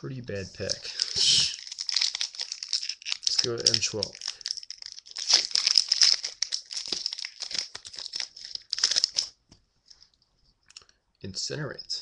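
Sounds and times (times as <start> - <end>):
foil wrapper tearing and crinkling: 0.7 - 9.4.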